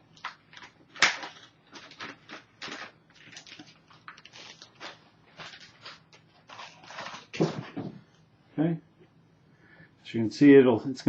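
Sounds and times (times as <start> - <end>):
plastic packaging crinkling: 0.0 - 7.9.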